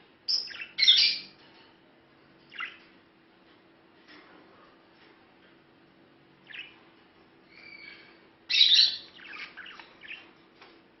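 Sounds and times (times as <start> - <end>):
budgerigars chirping and chattering: 0.3 - 1.4, 2.5 - 2.9, 6.4 - 10.4.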